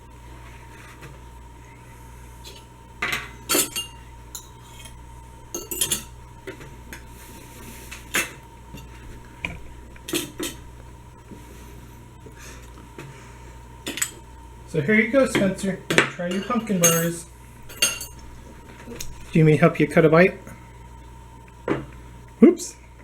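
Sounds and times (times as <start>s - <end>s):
metal utensils clinking on dishes: 2.5s - 5.0s, 5.6s - 6.2s, 16.3s - 18.2s.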